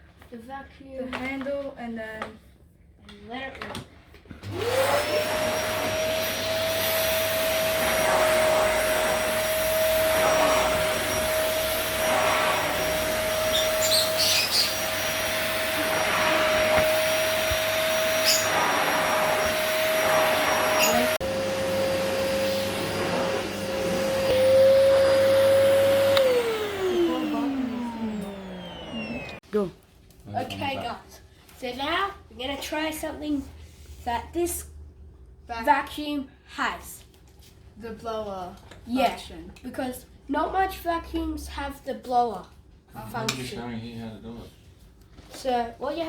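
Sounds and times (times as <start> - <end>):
vacuum cleaner motor whine: 4.4 - 29.4.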